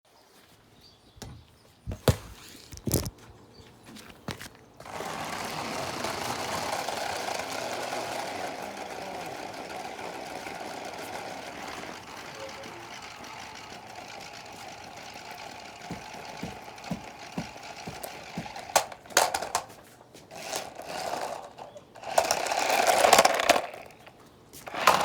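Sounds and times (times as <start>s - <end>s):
toy car motor whirring: 4.8s - 19.7s, 20.3s - 25.0s.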